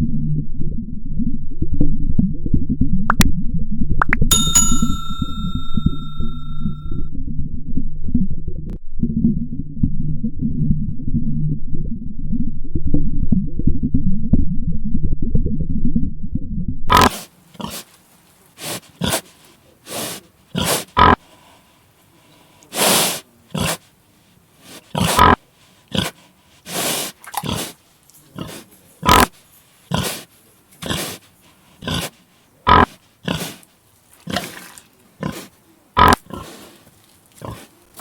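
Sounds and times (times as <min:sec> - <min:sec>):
loud low-pitched sound: 0:07.1 - 0:16.9.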